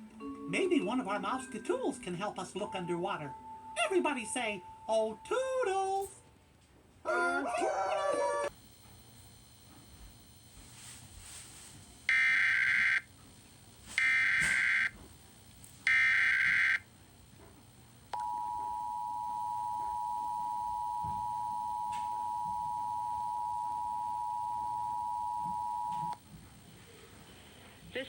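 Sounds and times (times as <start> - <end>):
steady two-tone attention signal: 18.2 - 26.2.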